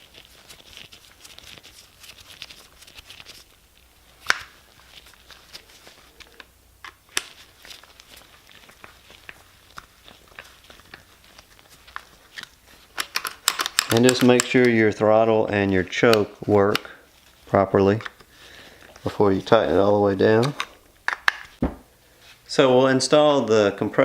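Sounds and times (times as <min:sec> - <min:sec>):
small parts clicking and rustling: 0:04.2 - 0:14.9.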